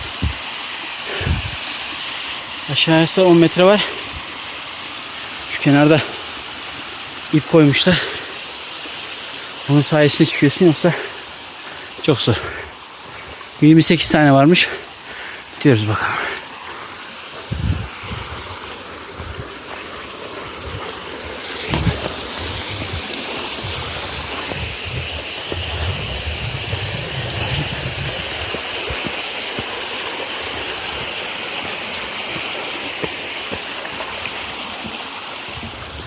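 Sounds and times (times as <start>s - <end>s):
waterfall rushing: 0.0s - 36.0s
low rumbling on microphone: 17.4s - 19.6s, 21.7s - 28.6s.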